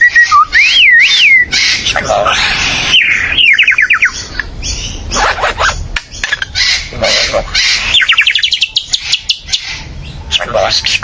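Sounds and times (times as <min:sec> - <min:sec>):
bird calling: 0:00.0 - 0:11.0.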